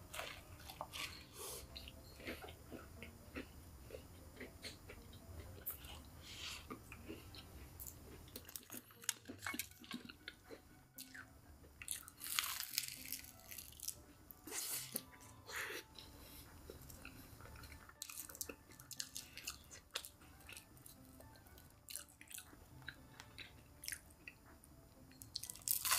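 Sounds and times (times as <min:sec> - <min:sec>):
chewing fried chicken: 0:00.1 - 0:16.1, 0:16.7 - 0:24.5, 0:25.3 - 0:25.9
loud crunching bites: 0:11.9 - 0:13.8.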